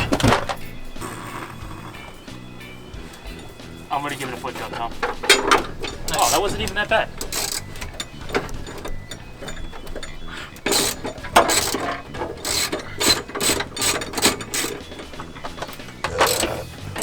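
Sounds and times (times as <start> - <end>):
socket wrench ratchet clicking: 4.9 - 17.0.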